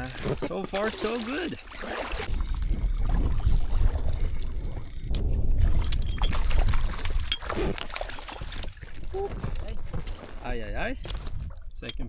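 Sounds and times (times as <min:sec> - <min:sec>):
paddle in water: 0:00.0 - 0:11.7
wind buffeting microphone: 0:02.2 - 0:11.8.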